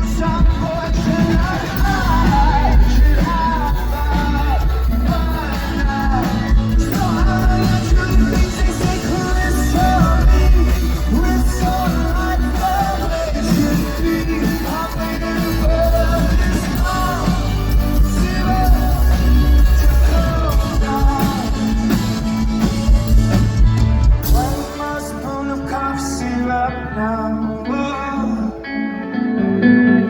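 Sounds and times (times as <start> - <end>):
person singing: 0.0 - 23.6, 24.2 - 30.0
rock band playing live: 0.0 - 30.0.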